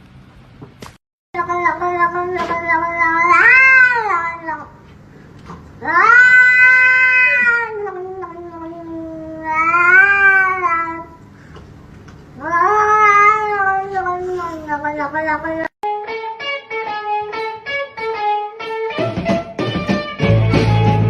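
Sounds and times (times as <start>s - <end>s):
cat yowling: 1.4s - 4.8s, 5.8s - 11.2s, 12.4s - 15.7s.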